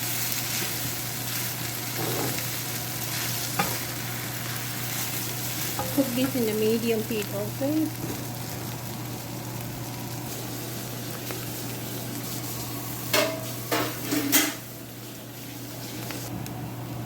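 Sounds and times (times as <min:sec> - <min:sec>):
noodles sizzling in a pan: 0:00.0 - 0:16.4.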